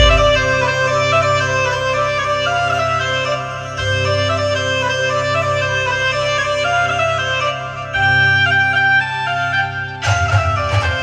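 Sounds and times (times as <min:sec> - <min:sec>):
low droning tone: 0:00.0 - 0:01.0.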